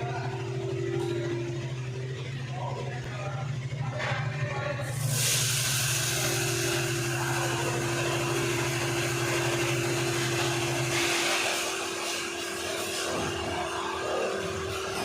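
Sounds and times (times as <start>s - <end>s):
machine motor hum: 0.0s - 15.0s
hiss: 4.9s - 7.9s.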